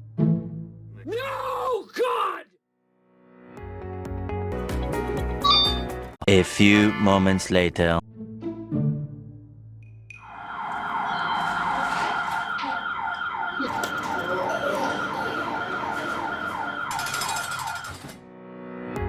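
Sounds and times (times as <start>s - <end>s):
security alarm siren whooping: 10.2s - 18.2s.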